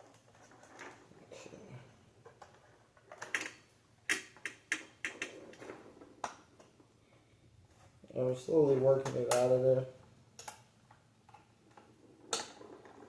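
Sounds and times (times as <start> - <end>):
plastic housing clicks and snaps: 10.4 - 10.7.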